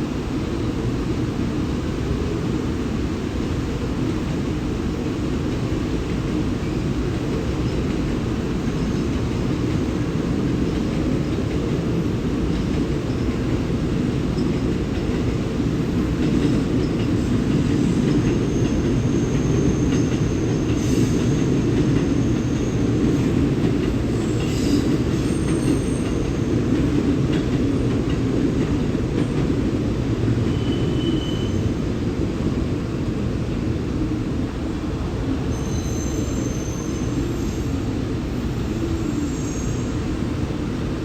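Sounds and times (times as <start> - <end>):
train rumble: 0.0 - 41.0
faint high wheel squeals: 30.5 - 31.8, 35.5 - 40.1.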